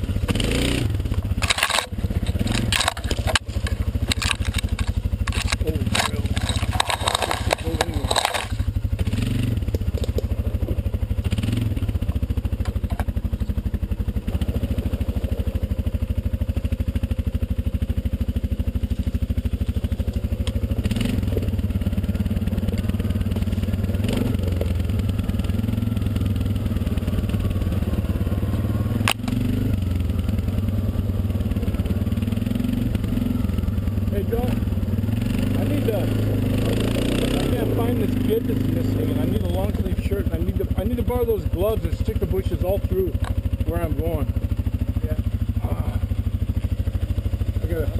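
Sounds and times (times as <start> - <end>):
atv engine running: 0.0 - 47.9
sharp knocks and clatters: 1.1 - 9.1.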